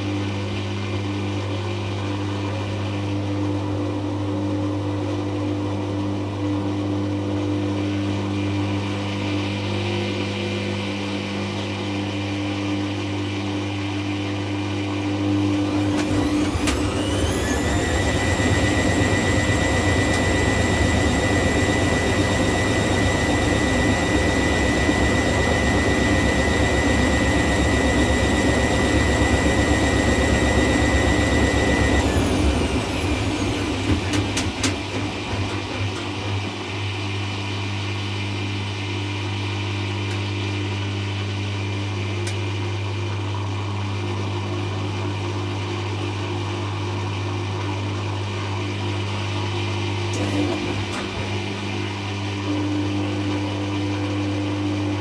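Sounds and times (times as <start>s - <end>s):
washing machine motor whine: 0.0s - 55.0s
drum winding down with clicks: 15.5s - 36.9s, 49.7s - 55.0s.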